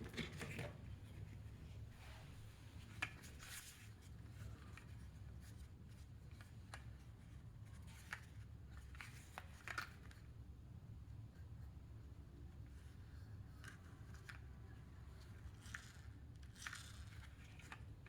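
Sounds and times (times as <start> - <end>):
toy car clicks and scrapes: 15.4 - 17.9.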